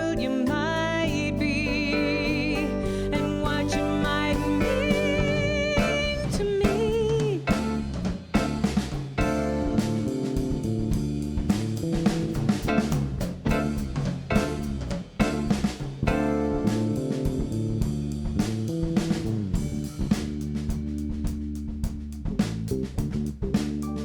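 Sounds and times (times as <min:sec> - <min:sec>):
bass: 0:00.0 - 0:24.0
drum kit beat: 0:00.0 - 0:24.0
keyboards: 0:00.0 - 0:24.0
guitar: 0:01.2 - 0:06.9, 0:12.7 - 0:17.0.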